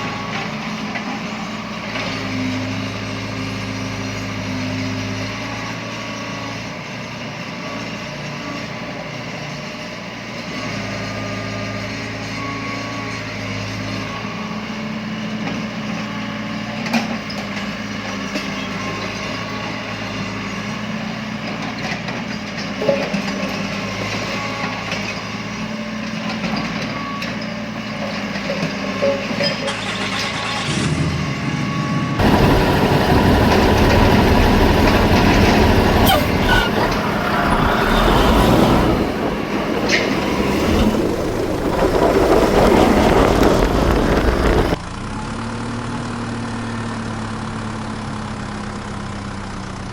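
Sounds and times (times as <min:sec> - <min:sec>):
heavy vehicle engine running: 0:00.0 - 0:49.9
loud rough noise: 0:27.8 - 0:46.4.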